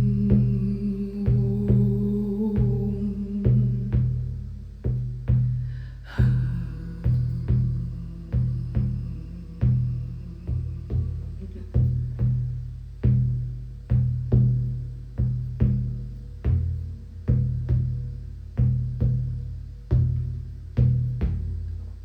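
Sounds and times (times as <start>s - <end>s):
deep drum beats: 0.0s - 22.0s.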